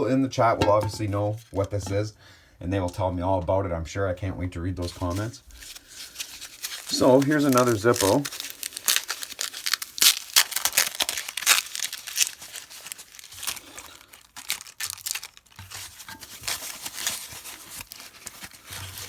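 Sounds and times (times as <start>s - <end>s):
packaging crinkling and tearing: 4.9s - 19.0s.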